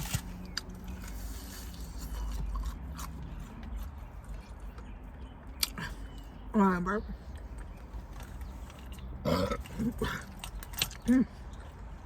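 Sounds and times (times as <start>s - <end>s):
person chewing food: 0.0s - 6.3s.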